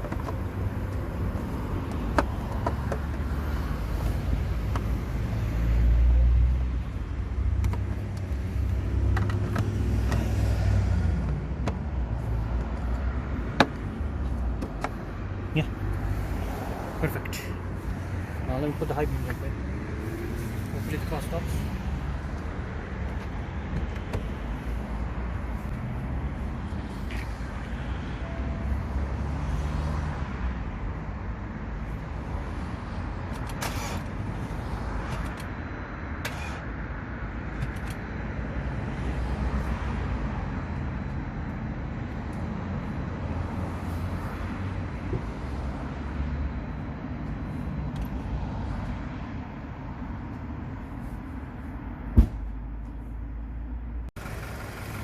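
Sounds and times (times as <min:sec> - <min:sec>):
sharp knock: 0:52.2 - 0:52.5.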